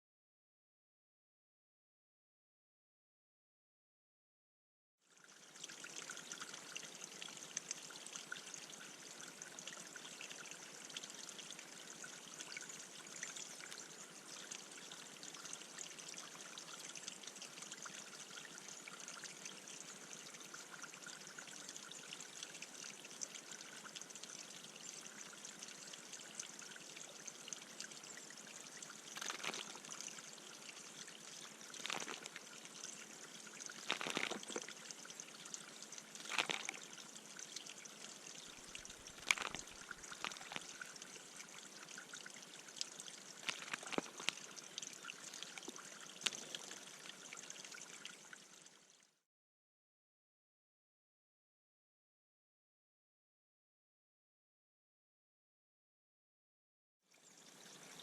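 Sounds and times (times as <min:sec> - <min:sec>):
water trickling: 0:05.0 - 0:49.2, 0:57.1 - 0:58.0.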